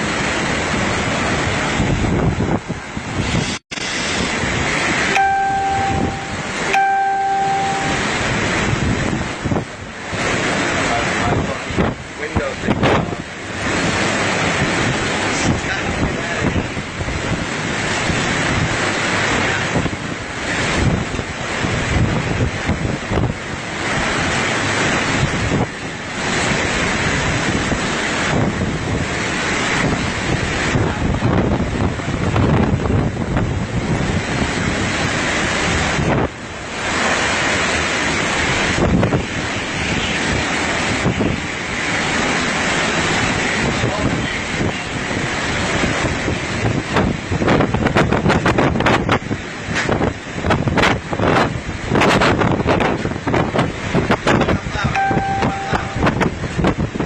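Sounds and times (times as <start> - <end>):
storm wind buffeting microphone: 0.0 - 6.7, 7.5 - 57.0
long horn-like tones: 5.1 - 8.6, 55.0 - 56.4.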